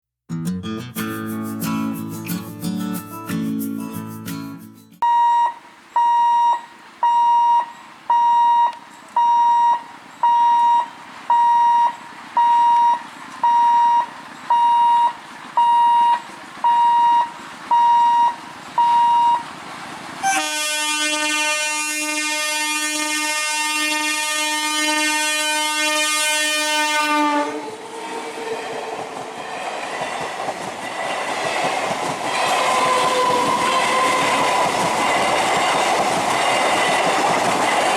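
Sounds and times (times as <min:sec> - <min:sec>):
level crossing warning beeps: 0:05.0 - 0:19.5
passing train rumble and clatter: 0:16.2 - 0:37.9
train horn: 0:20.2 - 0:29.6, 0:32.2 - 0:37.3.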